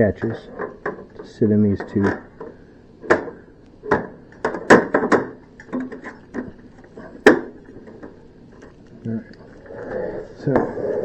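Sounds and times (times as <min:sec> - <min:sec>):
plastic panel knocks and clicks: 0:03.1 - 0:06.5.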